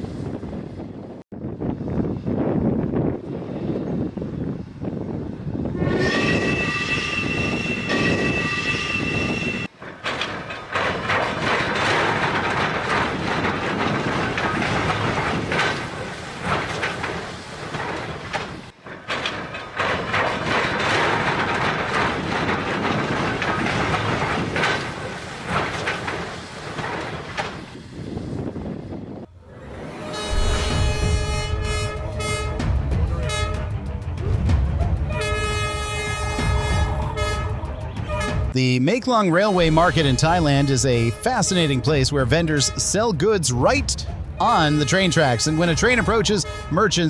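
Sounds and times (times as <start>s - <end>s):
train horn: 5.8s - 9.7s, 29.9s - 33.8s, 35.1s - 38.6s, 44.6s - 47.0s
train wheels clattering on rails: 6.0s - 28.4s.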